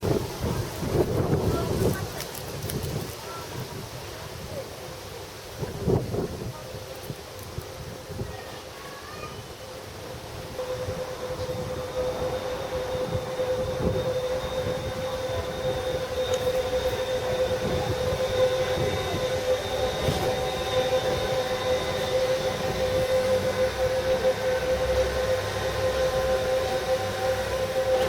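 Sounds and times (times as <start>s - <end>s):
monorail electric whine: 0.0s - 8.8s, 9.4s - 28.0s
faint high tone: 10.5s - 28.0s.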